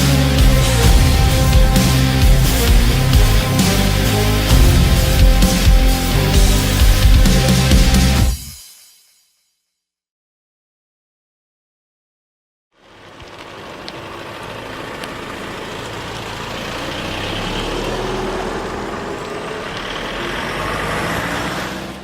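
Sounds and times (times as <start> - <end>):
steady rushing noise: 0.0 - 8.4
vehicle engine running: 0.0 - 8.4, 12.8 - 22.0.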